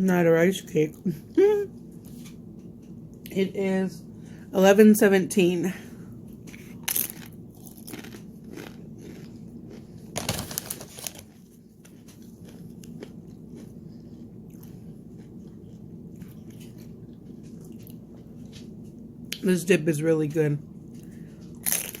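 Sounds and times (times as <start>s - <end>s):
crunching tortilla chips: 6.4s - 18.5s, 21.1s - 22.0s.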